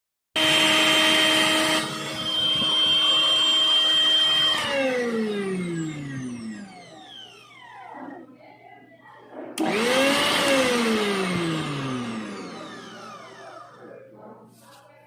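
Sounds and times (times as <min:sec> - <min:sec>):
mixer grinder motor whining: 0:00.4 - 0:08.7, 0:09.6 - 0:14.0.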